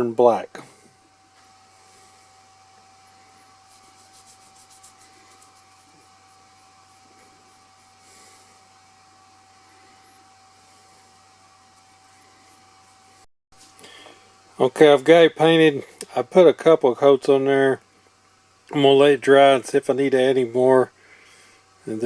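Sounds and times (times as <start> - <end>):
paintbrush rubbing on wood: 3.2 - 8.6.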